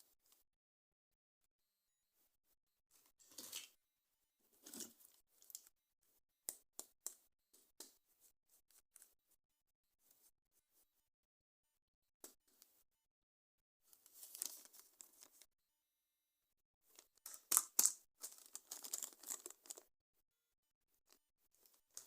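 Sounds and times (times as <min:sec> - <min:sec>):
packaging rustling scrapes: 0:14.0 - 0:15.4, 0:18.2 - 0:19.8.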